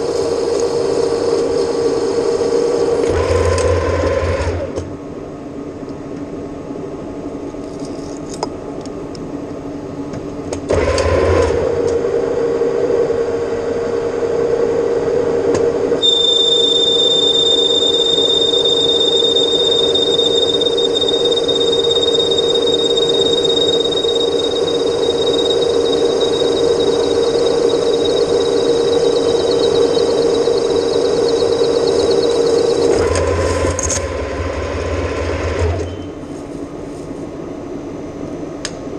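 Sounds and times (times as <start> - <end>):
high-pitched whine: 0.0 - 4.8, 10.7 - 38.9
metal lathe humming: 16.0 - 35.9.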